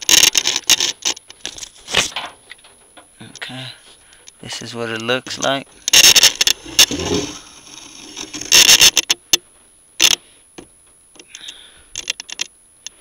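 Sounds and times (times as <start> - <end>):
scraping noise: 5.9 - 9.0.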